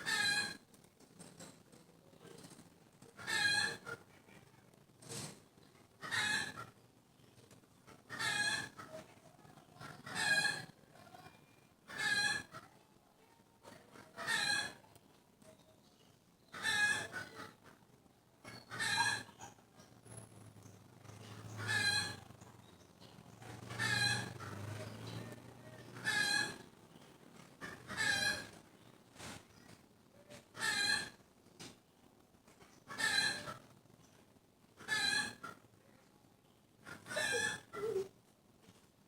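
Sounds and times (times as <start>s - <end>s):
animal high-pitched cries: 37.1s - 38.1s.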